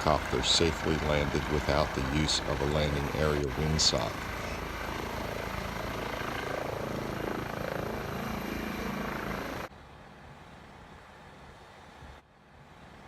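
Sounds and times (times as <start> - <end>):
helicopter rotor and engine: 0.0 - 9.7.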